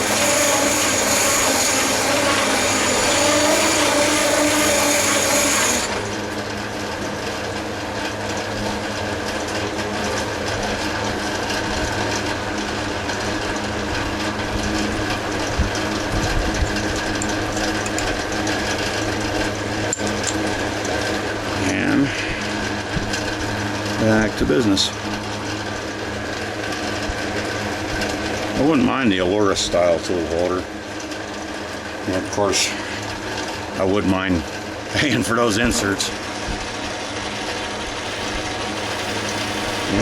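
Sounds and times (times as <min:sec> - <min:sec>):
high steady whine: 0:00.0 - 0:07.2, 0:09.6 - 0:26.4, 0:32.0 - 0:40.0
metal lathe humming: 0:00.0 - 0:07.6, 0:31.8 - 0:40.0.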